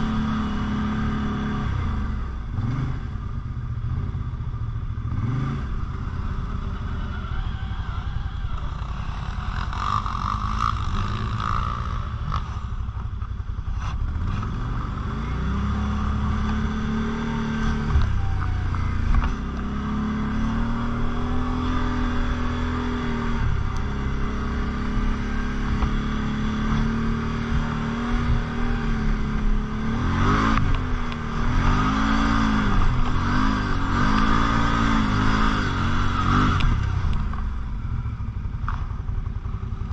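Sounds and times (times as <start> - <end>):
quad bike engine revving: 0.0 - 39.9.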